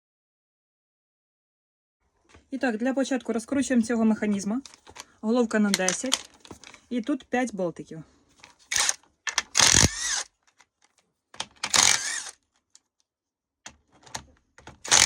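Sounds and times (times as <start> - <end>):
small metal clicks: 5.7 - 6.9, 8.4 - 12.9, 14.0 - 15.0
ratchet wrench clicking: 8.7 - 10.3, 11.6 - 12.4.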